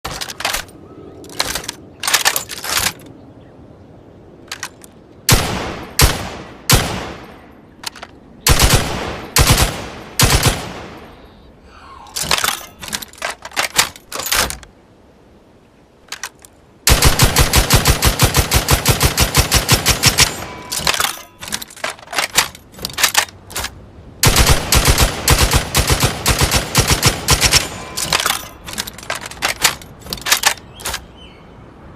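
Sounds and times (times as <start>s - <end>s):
heavy machine gun firing: 8.5s - 10.9s.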